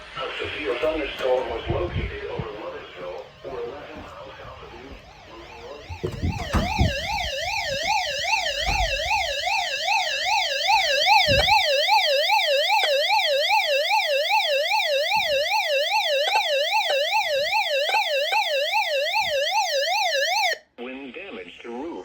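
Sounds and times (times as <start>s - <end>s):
electronic siren yelping: 5.0s - 20.6s.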